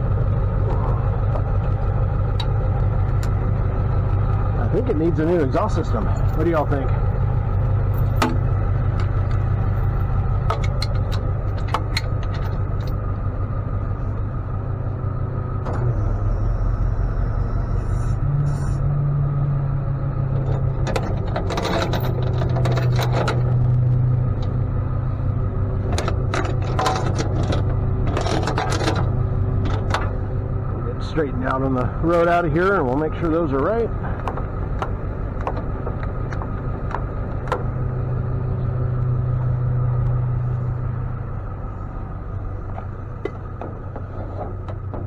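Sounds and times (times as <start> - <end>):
metal clanks and rattles: 0.0 - 13.1, 20.3 - 24.6, 25.8 - 30.5, 32.3 - 37.8, 42.3 - 45.0
vehicle engine idling: 0.0 - 45.0.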